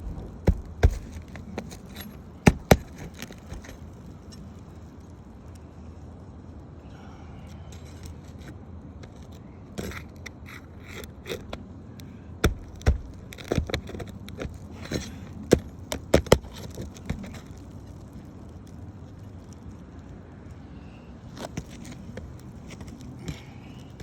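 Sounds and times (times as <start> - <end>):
sharp irregular knocks: 0.0 - 3.8, 12.4 - 17.5
scraping and rattling on shingle: 0.0 - 4.7, 7.8 - 11.8, 12.4 - 19.6, 21.3 - 24.0.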